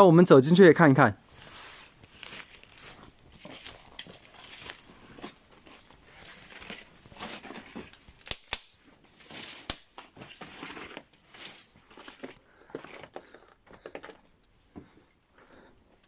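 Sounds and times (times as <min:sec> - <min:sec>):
footsteps on dry forest litter: 0:01.4 - 0:07.7
twigs snapping: 0:05.6 - 0:08.8, 0:09.5 - 0:10.1.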